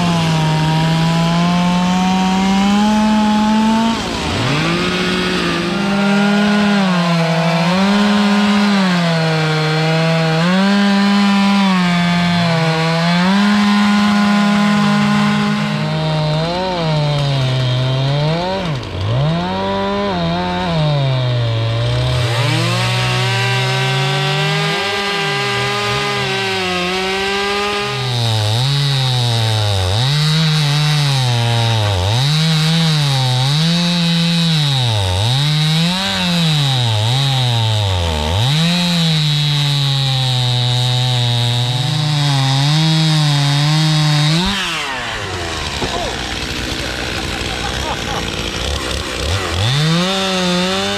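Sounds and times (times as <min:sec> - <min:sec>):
chainsaw cutting wood: 0:00.0 - 0:50.9.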